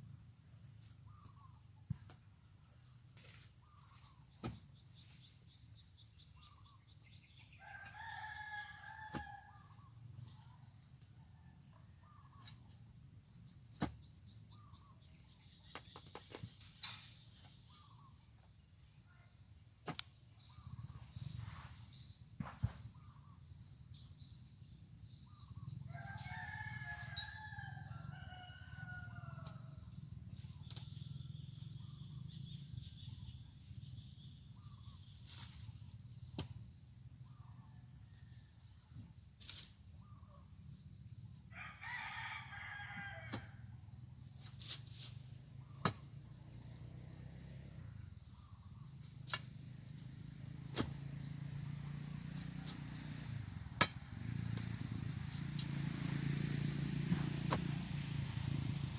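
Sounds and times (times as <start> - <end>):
rooster crowing: 7.6 - 9.9, 25.9 - 29.8, 41.5 - 43.9.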